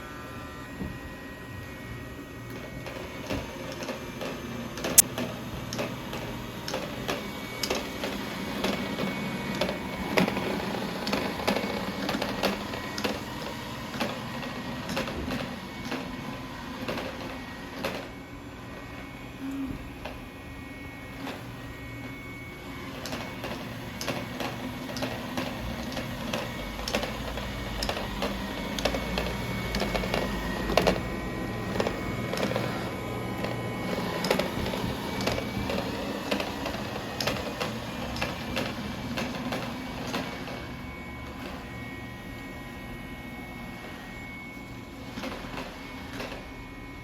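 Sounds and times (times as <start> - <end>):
robot vacuum motor whine: 0.0 - 47.0.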